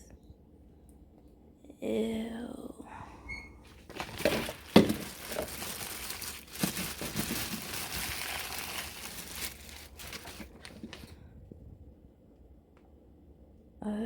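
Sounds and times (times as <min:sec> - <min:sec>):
plastic packaging crinkling: 0:03.9 - 0:11.2.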